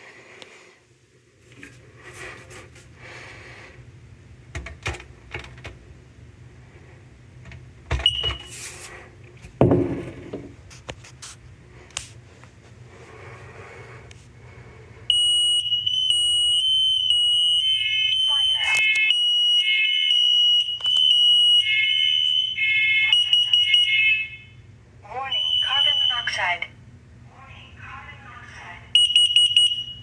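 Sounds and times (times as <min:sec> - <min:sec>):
smoke alarm chirp: 0:08.0 - 0:08.6, 0:15.1 - 0:24.6, 0:25.2 - 0:26.5, 0:29.0 - 0:30.0
dull thump: 0:09.6 - 0:10.6.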